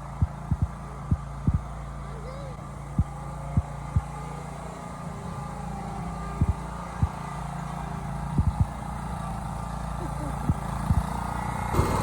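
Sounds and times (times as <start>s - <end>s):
lawn mower engine running: 0.0s - 12.0s
short low thumps: 0.2s - 1.7s.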